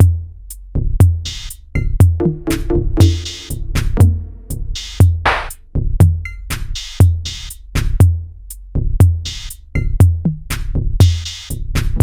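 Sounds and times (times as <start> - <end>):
hi-hat and snare hits: 0.0 - 12.0
deep kick drum boom: 1.8 - 6.2
electronic music: 2.2 - 5.5.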